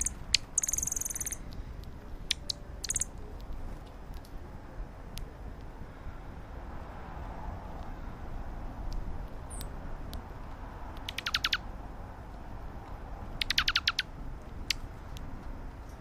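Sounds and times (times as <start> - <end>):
small bird calling: 0.0 - 1.4, 2.3 - 3.2, 11.0 - 11.6, 13.4 - 14.1
sharp clicks: 0.0 - 4.4, 10.9 - 11.6, 13.4 - 15.6.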